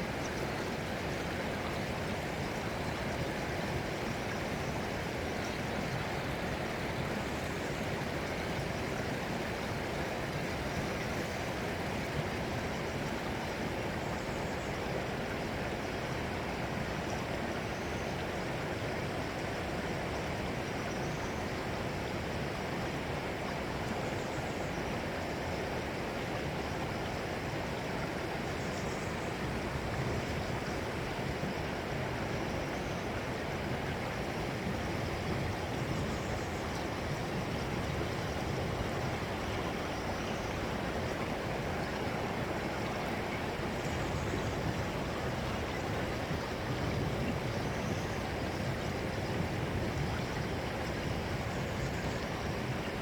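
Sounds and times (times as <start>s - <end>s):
running water flowing: 24.9s - 53.0s.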